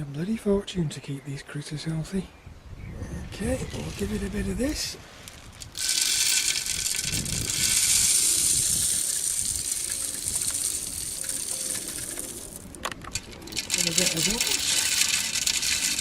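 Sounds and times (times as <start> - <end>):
bird seed pouring: 5.3 - 16.0.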